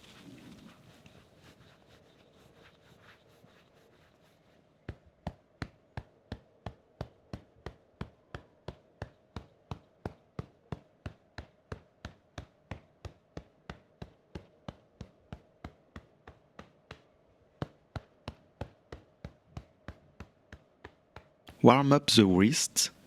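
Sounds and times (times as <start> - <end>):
hand patting on arm: 4.8 - 21.6.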